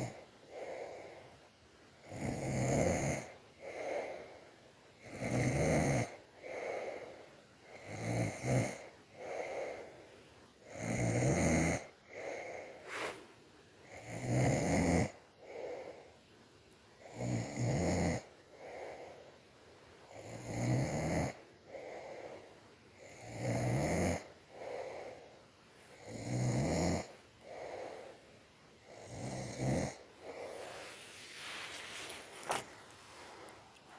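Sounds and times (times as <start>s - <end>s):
person snoring: 2.0s - 4.0s, 5.0s - 6.8s, 7.7s - 9.8s, 10.7s - 13.3s, 13.9s - 16.0s, 17.0s - 19.1s, 20.1s - 22.3s, 23.0s - 25.2s, 25.9s - 28.2s, 28.8s - 33.9s.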